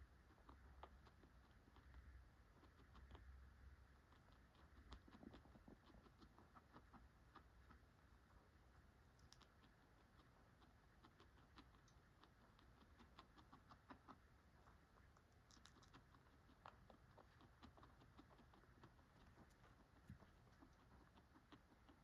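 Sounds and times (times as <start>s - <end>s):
guinea pig chewing pellets: 0.0s - 22.0s.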